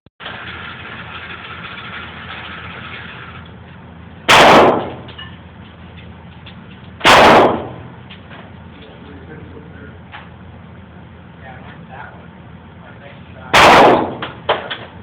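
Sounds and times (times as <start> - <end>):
pistol shots: 4.3 - 5.1, 7.0 - 7.9, 13.5 - 14.6.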